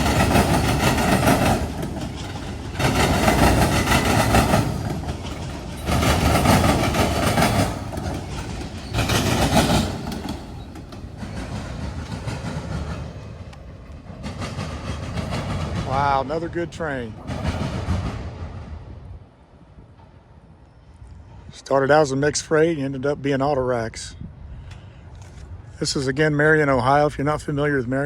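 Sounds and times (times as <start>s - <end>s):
train wheels clattering over crossing: 0.0s - 21.4s.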